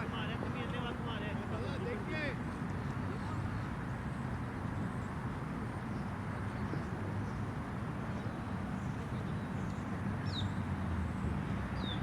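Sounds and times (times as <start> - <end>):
low outdoor background noise: 0.0 - 12.0.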